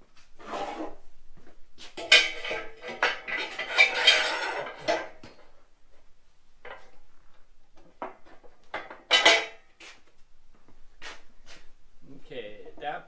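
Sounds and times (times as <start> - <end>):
metal parts clanking: 2.0 - 5.4, 8.8 - 9.6.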